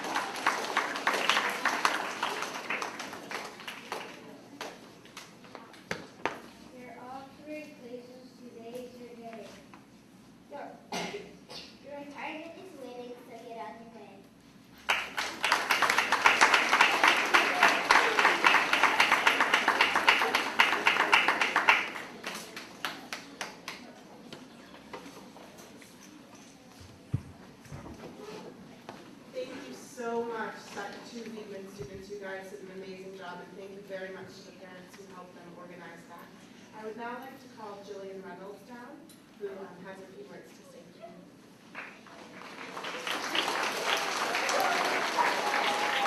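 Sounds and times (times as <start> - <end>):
audience clapping: 0.0 - 5.3, 14.8 - 23.9, 41.7 - 46.0.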